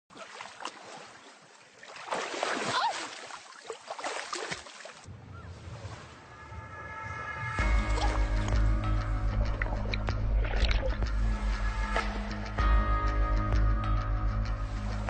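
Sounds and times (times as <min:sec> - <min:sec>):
sea water splashing: 0:00.1 - 0:12.4
low music: 0:06.3 - 0:15.0.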